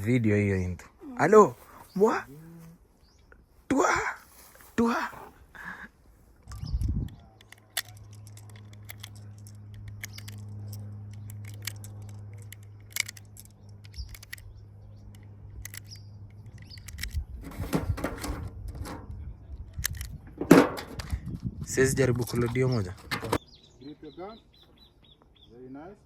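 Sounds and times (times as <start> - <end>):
low steady hum: 4.4 - 22.4
light clicks and handling noises: 6.4 - 21.6.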